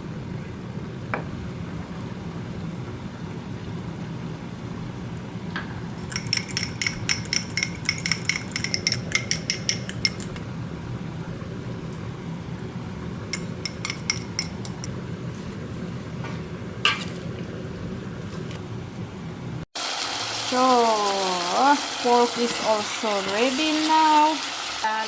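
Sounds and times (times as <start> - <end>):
metal spoon clinking on cookware: 6.0 - 10.4, 13.3 - 14.9, 16.8 - 17.2.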